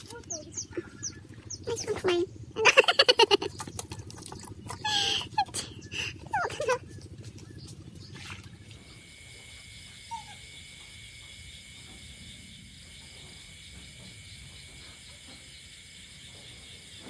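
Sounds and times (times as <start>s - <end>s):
night insects trilling: 8.6s - 17.0s.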